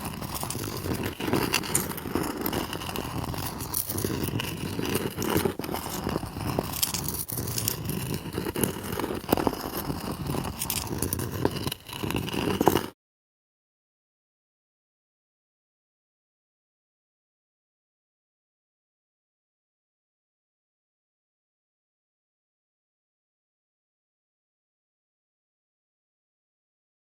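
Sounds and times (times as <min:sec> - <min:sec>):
rock scraping across stone: 0:00.0 - 0:13.0.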